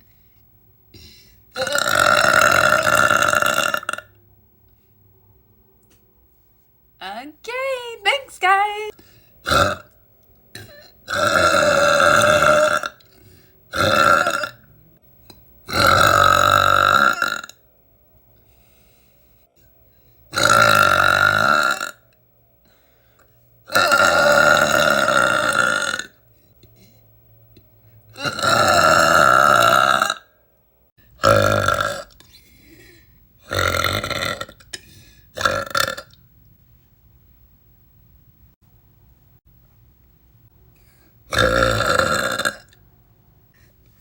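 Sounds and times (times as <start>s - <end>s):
woman burping loudly: 1.5s - 4.2s, 7.7s - 9.9s, 10.5s - 13.1s, 13.7s - 14.7s, 15.7s - 17.6s, 20.3s - 22.0s, 23.7s - 26.2s, 28.2s - 30.3s, 31.2s - 32.2s, 33.4s - 34.8s, 35.4s - 36.2s, 41.3s - 42.8s.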